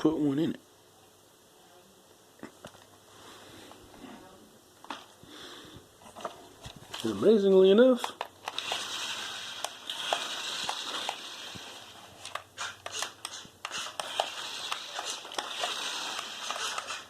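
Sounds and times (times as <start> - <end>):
plastic parts clicking: 8.0 - 8.9
toy car motors whirring: 8.1 - 17.0.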